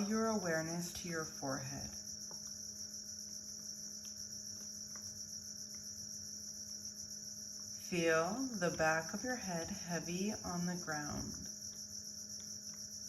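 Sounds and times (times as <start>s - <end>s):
crickets chirping: 0.0s - 13.0s
faint low hum: 0.0s - 13.0s.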